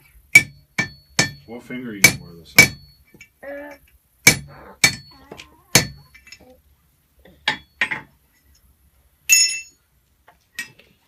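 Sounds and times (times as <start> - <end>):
hammer striking metal on anvil: 0.3 - 3.0, 4.3 - 6.0.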